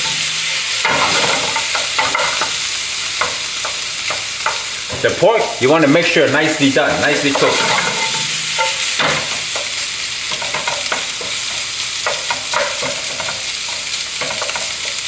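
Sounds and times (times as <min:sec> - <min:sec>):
utensil scraping a pan: 0:00.0 - 0:02.6, 0:06.8 - 0:15.0
food sizzling in a frying pan: 0:00.0 - 0:15.0.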